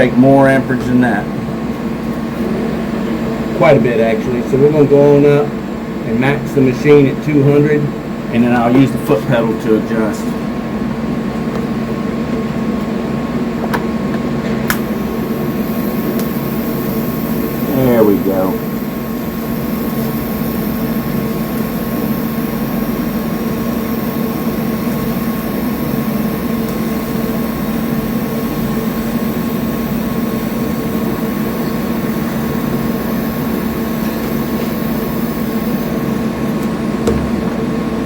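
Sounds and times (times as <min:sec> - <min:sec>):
tig welding arc hiss and hum: 0:12.7 - 0:38.0.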